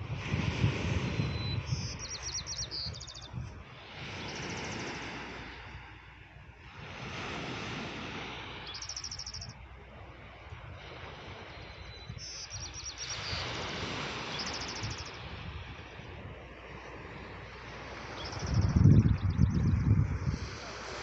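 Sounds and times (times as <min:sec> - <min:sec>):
songbird high trill: 0:01.2 - 0:03.3, 0:08.6 - 0:09.5, 0:11.8 - 0:13.6, 0:14.3 - 0:15.2.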